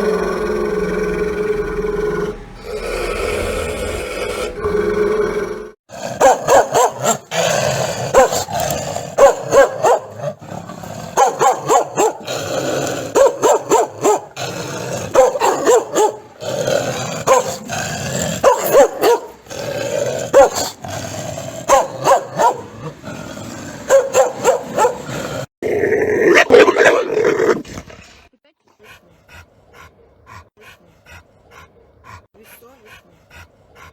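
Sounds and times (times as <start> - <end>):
dog growling: 0.0 - 28.0
dog barking: 6.0 - 10.4, 11.1 - 12.3, 13.0 - 14.4, 15.0 - 16.4, 17.2 - 17.7, 18.4 - 19.4, 20.2 - 20.8, 21.6 - 23.0, 23.8 - 25.2.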